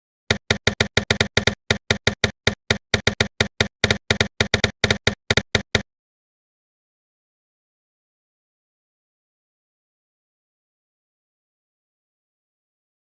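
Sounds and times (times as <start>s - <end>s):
rapid sharp clicks: 0.3s - 5.8s.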